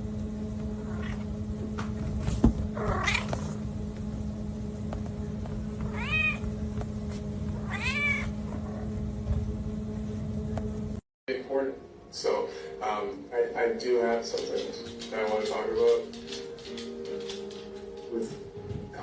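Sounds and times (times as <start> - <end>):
steady background hum: 0.0 - 19.0
cat meowing: 2.8 - 3.4, 5.9 - 6.4, 7.6 - 8.4.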